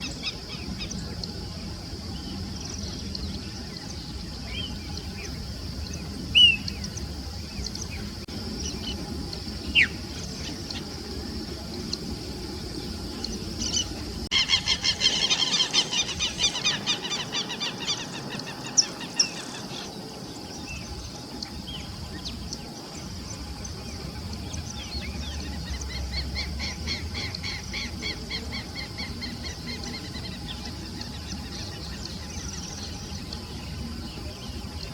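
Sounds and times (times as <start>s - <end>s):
steady high-pitched hum: 0.0s - 34.9s
bird calling and chattering: 9.6s - 11.0s, 13.2s - 21.5s.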